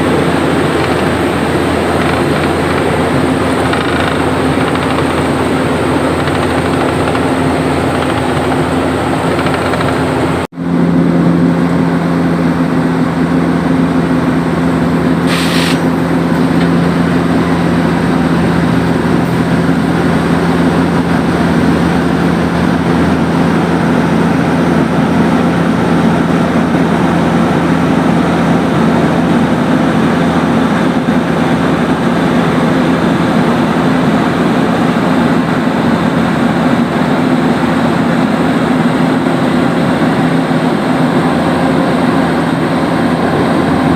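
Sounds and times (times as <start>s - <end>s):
heavy diesel machinery running: 0.0s - 43.9s
short hiss: 15.2s - 15.9s.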